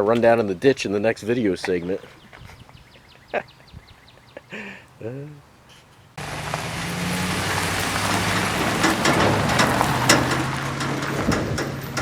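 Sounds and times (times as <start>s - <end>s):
road noise: 1.7s - 12.0s
sharp clicks and rattles: 6.2s - 12.0s
truck engine running: 6.2s - 12.0s.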